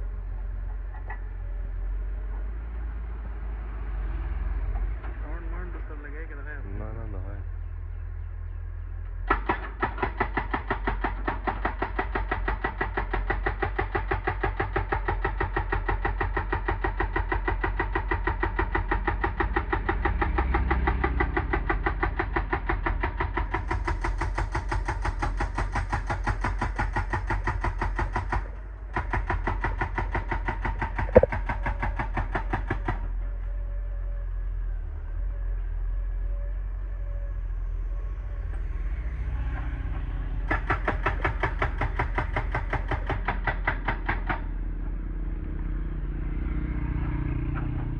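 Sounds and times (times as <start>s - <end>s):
diesel engine running: 0.0s - 11.8s, 12.4s - 25.4s, 30.8s - 43.3s, 44.2s - 47.9s
hydraulic breaker hammering rock: 9.3s - 33.2s, 40.4s - 44.6s.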